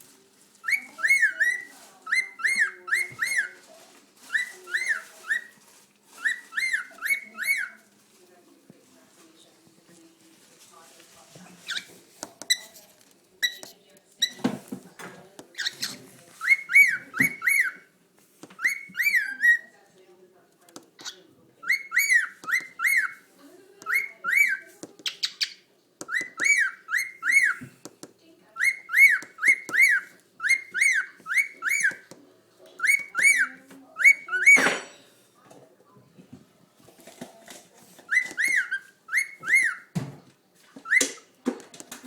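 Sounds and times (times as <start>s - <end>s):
cockatiel whistling: 0.6s - 3.6s, 6.2s - 7.8s, 15.6s - 17.9s, 18.6s - 19.7s, 21.0s - 23.2s, 23.9s - 27.7s, 28.6s - 32.0s, 32.8s - 34.6s, 38.1s - 39.9s, 40.8s - 41.2s
harsh bird chirps: 15.6s - 17.9s, 18.6s - 19.7s, 21.0s - 23.2s, 23.9s - 27.6s, 28.6s - 32.1s, 32.8s - 34.6s, 38.1s - 39.9s.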